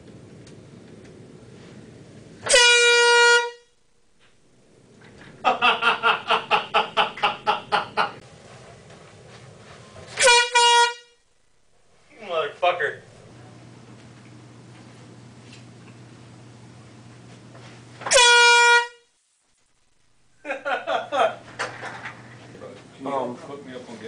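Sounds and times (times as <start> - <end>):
handheld air horn blasting: 2.4 - 3.8, 10.2 - 11.3, 18.0 - 19.1.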